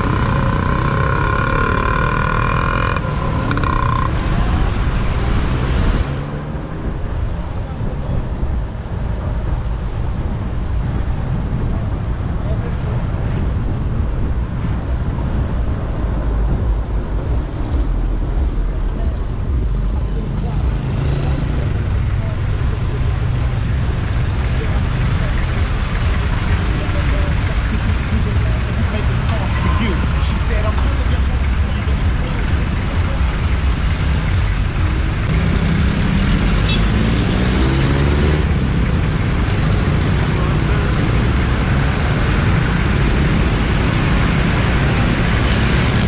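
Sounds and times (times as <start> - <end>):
road noise: 0.0 - 46.0
wind rushing over microphone: 2.9 - 26.8.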